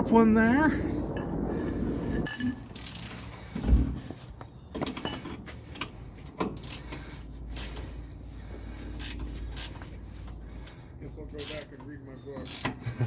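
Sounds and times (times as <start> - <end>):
heavy thump: 3.5 - 4.1
hand tools clinking on metal: 4.8 - 7.9, 8.9 - 9.9, 11.2 - 12.9.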